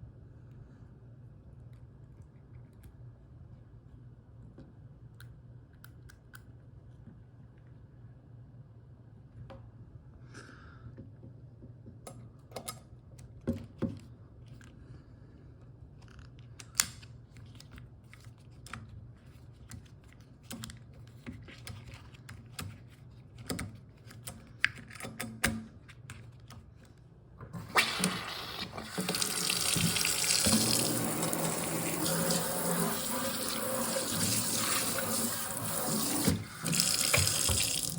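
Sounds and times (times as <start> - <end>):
water running into sink: 27.6 - 37.9.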